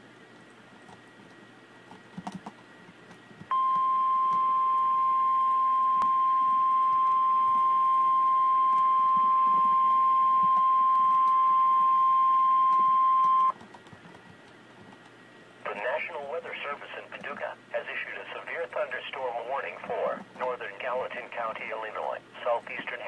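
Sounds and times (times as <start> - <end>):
faint hiss and clicks: 0.0 - 4.4, 12.7 - 23.0
steady alarm beep: 3.5 - 13.5.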